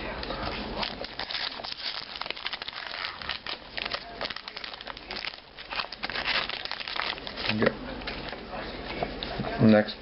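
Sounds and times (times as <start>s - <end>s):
foil wrapper crinkling: 0.4s - 8.4s.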